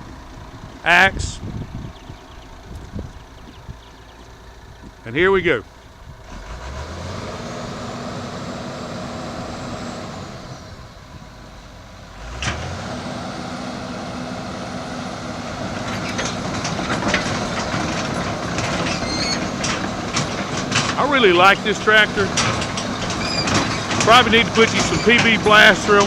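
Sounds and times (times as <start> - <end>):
excavator diesel engine working: 0.0 - 26.0
metal clanks and creaks: 15.5 - 26.0.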